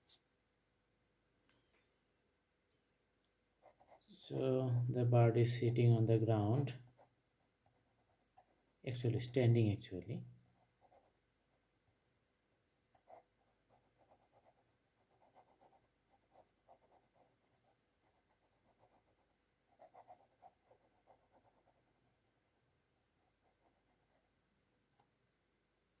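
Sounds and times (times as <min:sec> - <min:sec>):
pencil scratching on paper: 0:03.6 - 0:04.2, 0:06.9 - 0:08.8, 0:10.6 - 0:11.2, 0:12.9 - 0:22.0, 0:23.2 - 0:24.3.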